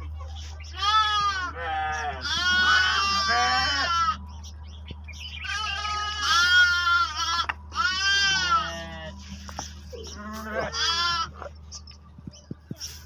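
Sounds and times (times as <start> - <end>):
lambs bleating: 0.7 - 4.2, 5.3 - 11.5.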